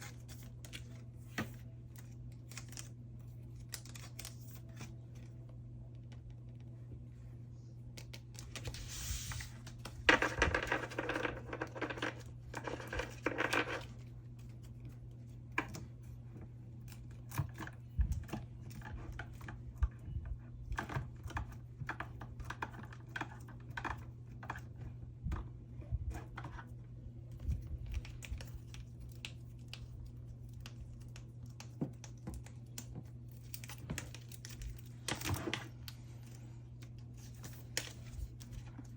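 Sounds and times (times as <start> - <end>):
steady low hum: 0.0 - 38.9
plastic sleeves rustling: 26.1 - 38.9.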